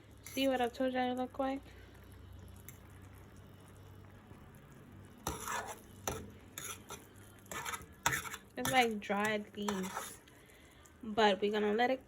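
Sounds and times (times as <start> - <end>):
faint low background hum: 0.0 - 12.0
utensil scraping and clinking pot: 0.2 - 0.8, 5.2 - 10.4.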